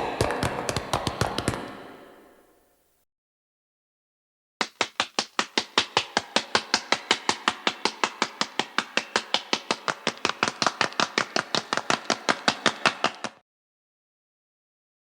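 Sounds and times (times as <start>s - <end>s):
running footsteps: 0.0s - 1.9s, 4.6s - 13.4s.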